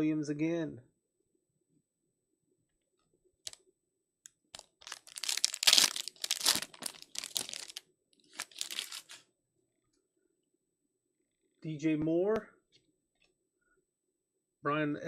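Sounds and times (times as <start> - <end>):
wrapper tearing and crinkling: 4.6 - 9.2.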